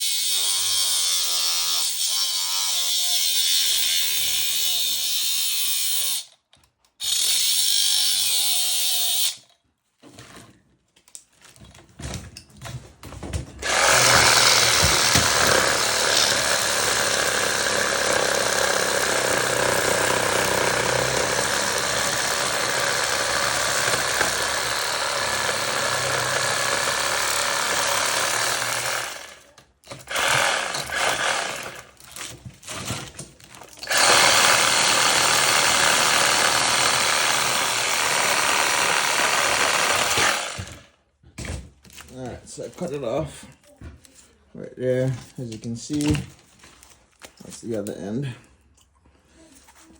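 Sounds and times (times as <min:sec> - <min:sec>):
power tool cutting metal: 0:00.0 - 0:06.3, 0:07.0 - 0:09.5, 0:13.6 - 0:32.0, 0:33.8 - 0:40.8.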